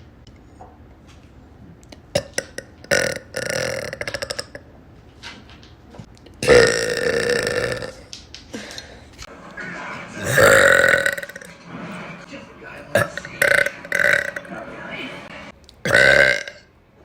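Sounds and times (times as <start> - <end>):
woman burping: 2.2 - 4.6, 6.4 - 8.0, 10.2 - 11.5, 12.9 - 14.5, 15.8 - 16.7.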